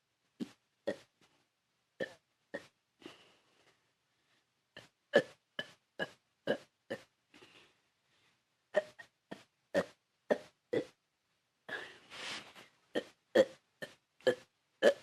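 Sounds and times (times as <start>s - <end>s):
person burping: 0.9s - 1.1s, 2.0s - 2.7s, 5.1s - 7.1s, 8.8s - 11.0s, 13.0s - 15.0s
breathing: 3.0s - 4.5s, 7.3s - 8.4s, 11.7s - 12.7s.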